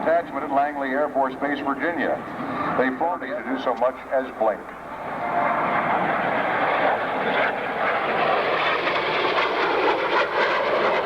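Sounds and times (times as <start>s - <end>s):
jet fighter passing over: 4.9s - 11.0s.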